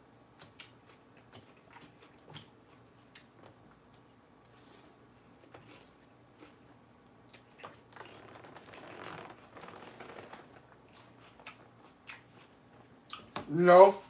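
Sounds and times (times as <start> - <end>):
crunchy lettuce being chewed: 4.6 - 13.2.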